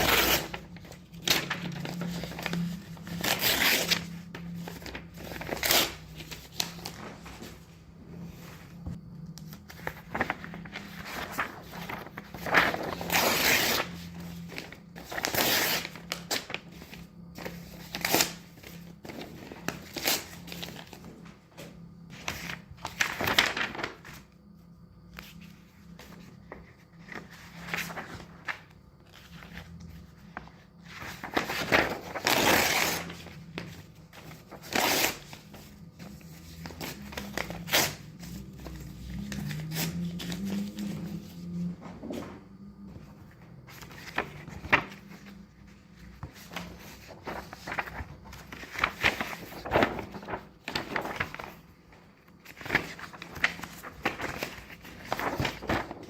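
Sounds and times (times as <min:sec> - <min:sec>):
paper pages flipping: 0:00.0 - 0:07.7, 0:08.5 - 0:21.2, 0:22.1 - 0:24.3, 0:25.1 - 0:41.5, 0:43.7 - 0:56.0
low steady hum: 0:00.5 - 0:15.2, 0:20.6 - 0:32.3, 0:47.0 - 0:51.4.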